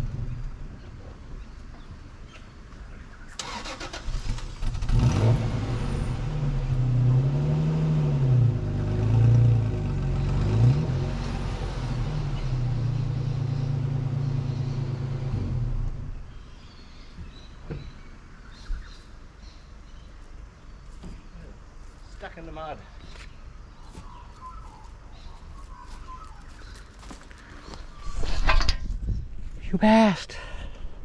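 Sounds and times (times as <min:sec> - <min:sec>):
vehicle engine starting and revving: 0:03.3 - 0:16.9.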